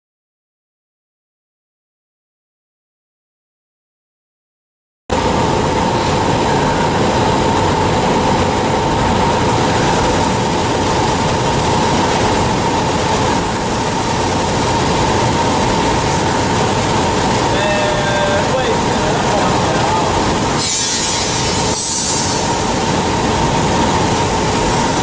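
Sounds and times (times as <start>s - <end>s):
milling machine running: 5.1s - 25.0s
thin high whine: 5.1s - 25.0s.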